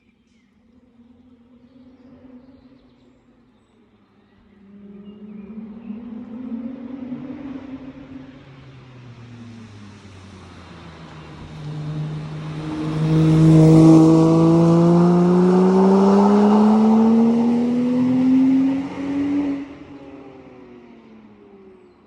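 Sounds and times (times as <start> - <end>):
sports car engine accelerating: 4.7 - 22.0.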